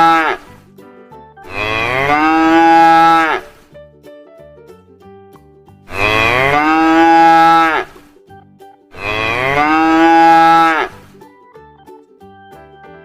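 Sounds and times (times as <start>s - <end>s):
cow mooing: 0.0s - 0.4s, 1.5s - 3.6s, 5.9s - 8.0s, 9.0s - 11.0s
soft background music: 0.0s - 13.0s.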